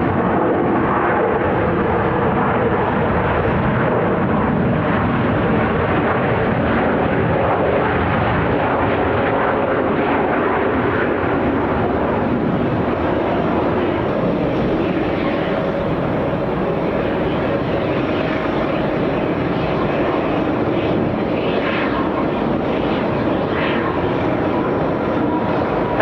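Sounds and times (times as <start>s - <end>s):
jet engines running: 9.8s - 26.0s.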